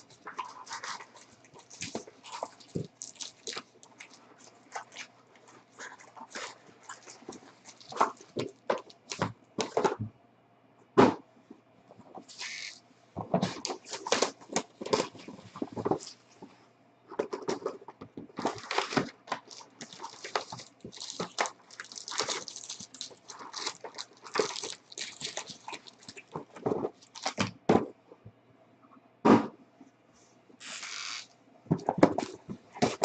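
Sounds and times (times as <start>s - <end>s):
plastic wrap crinkling and tearing: 0.0s - 9.2s, 13.4s - 16.2s, 18.4s - 27.5s
packaging clicks: 18.5s - 27.5s.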